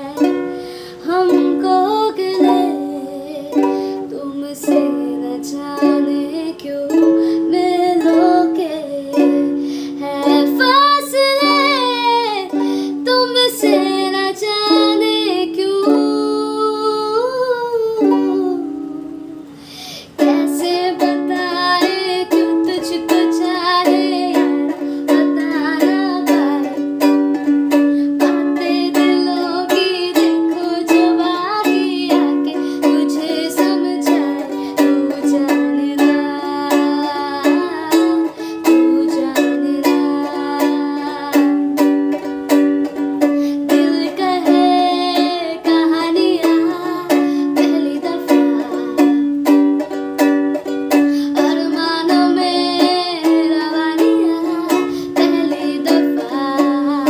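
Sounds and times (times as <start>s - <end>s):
person singing: 0.0s - 57.0s
ukulele strumming: 0.0s - 57.0s.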